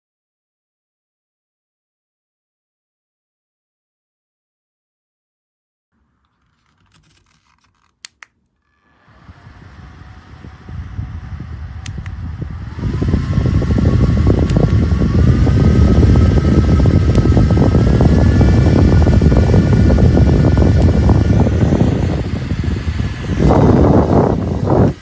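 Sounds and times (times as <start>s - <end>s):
handheld fan motor whine: 6.1s - 25.0s
air rushing over microphone: 9.1s - 25.0s.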